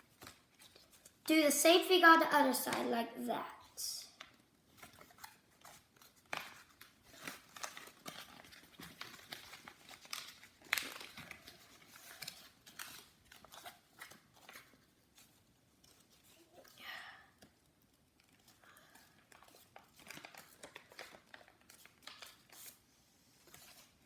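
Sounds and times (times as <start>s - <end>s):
paper being folded and creased: 0.0s - 1.3s, 4.2s - 16.8s, 17.4s - 24.0s.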